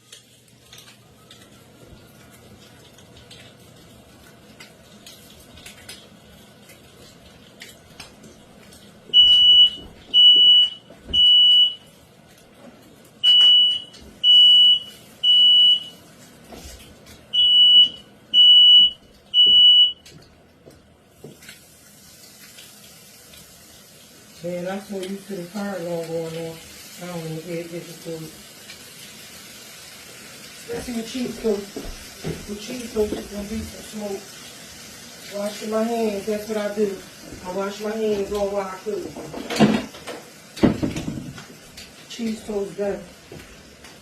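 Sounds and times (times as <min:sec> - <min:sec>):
smoke alarm beeping: 0:09.1 - 0:12.0, 0:13.2 - 0:16.0, 0:17.3 - 0:20.1.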